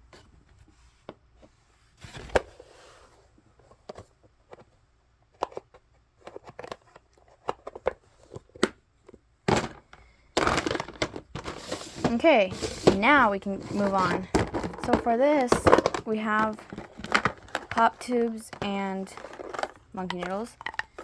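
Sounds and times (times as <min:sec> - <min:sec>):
toys clicking and rustling: 0:10.4 - 0:21.0.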